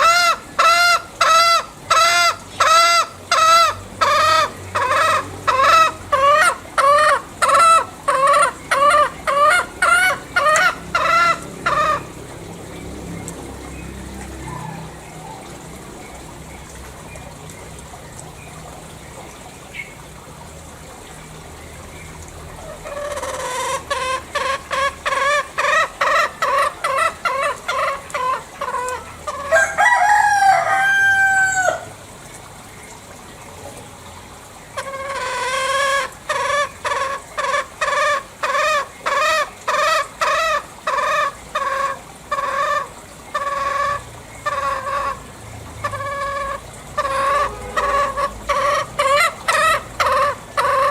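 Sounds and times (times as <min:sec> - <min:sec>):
bird clucking notes: 0:00.0 - 0:12.2, 0:22.5 - 0:31.9, 0:34.7 - 0:50.9.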